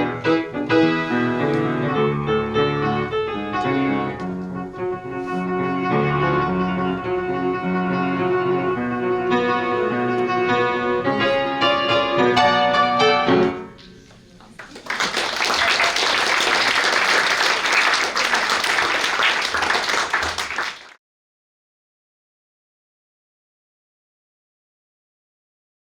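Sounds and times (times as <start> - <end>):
solo piano: 0.0 - 13.8
audience applause: 14.5 - 21.0.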